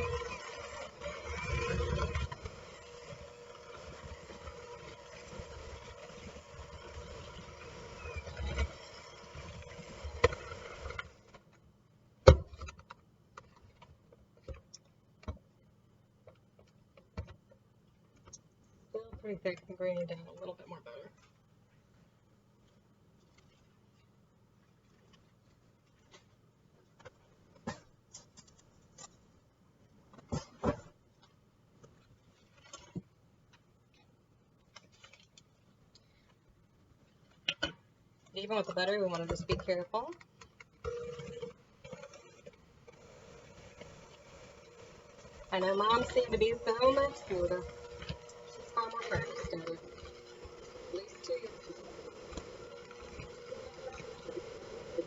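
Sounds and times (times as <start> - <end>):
electric hand mixer running: 0.0 - 11.2, 43.6 - 55.0.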